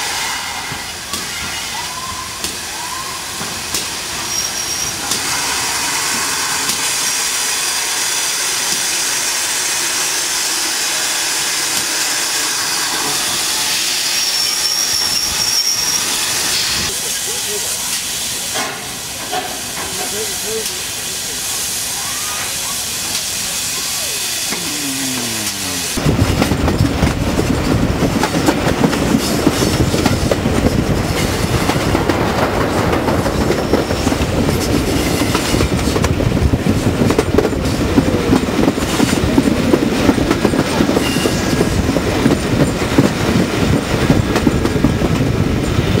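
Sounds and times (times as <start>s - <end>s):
steam hiss: 0.0s - 26.0s
train rumbling on rails: 0.0s - 46.0s
wheels clickety-clack: 17.9s - 20.8s, 26.0s - 46.0s.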